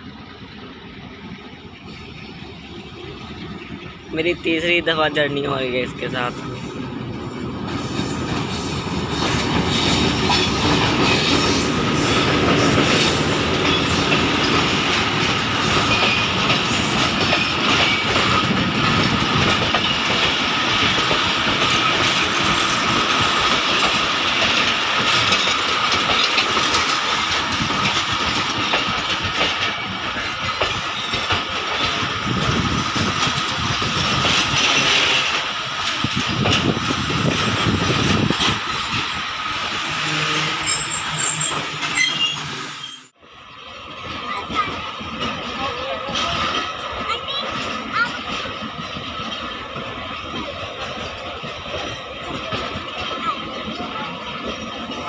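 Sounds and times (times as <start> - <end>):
train wheels clattering over joints: 0.2 - 43.1, 43.9 - 55.0
wheel squealing on rail: 6.4 - 55.0.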